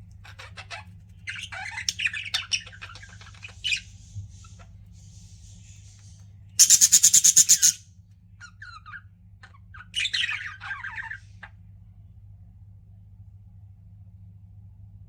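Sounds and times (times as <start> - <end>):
budgerigars chirping and chattering: 0.2 - 7.8, 8.4 - 11.6.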